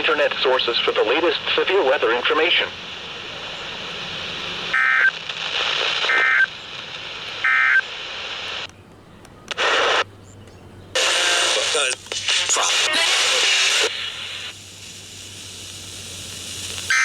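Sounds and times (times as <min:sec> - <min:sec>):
radio hiss: 0:00.0 - 0:08.7, 0:09.5 - 0:10.1, 0:10.9 - 0:17.0.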